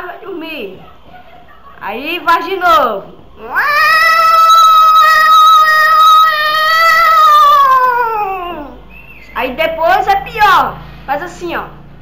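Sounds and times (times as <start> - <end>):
girl imitating cat yowl: 3.4 - 8.8.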